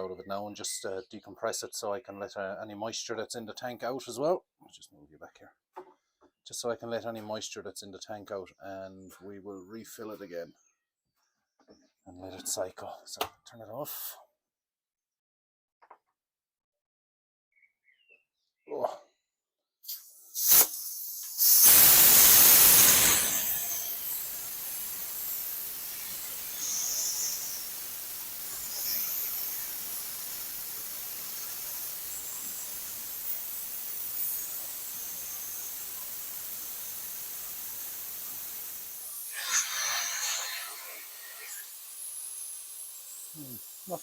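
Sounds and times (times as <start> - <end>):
valve click: 19.8 - 39.7
compressed air hissing: 19.8 - 44.0.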